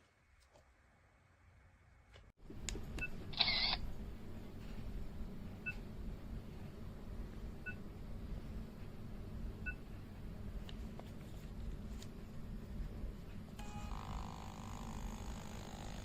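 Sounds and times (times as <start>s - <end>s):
steady low hum: 0.0s - 16.0s
short electronic camera beeps: 3.0s - 3.8s.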